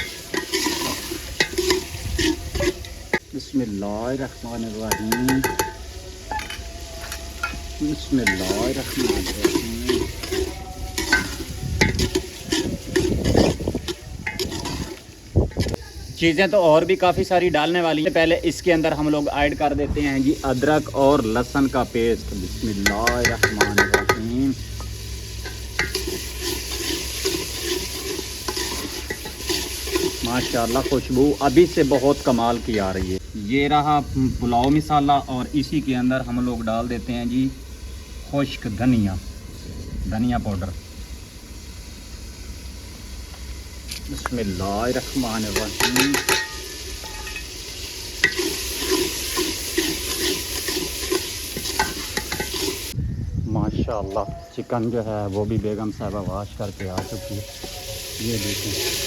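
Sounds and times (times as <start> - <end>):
spoon scraping a pot: 0.0 - 3.2, 4.9 - 15.8, 22.6 - 32.8, 45.2 - 47.6, 48.2 - 52.9
masala sizzling in oil: 0.0 - 53.0, 54.5 - 59.0.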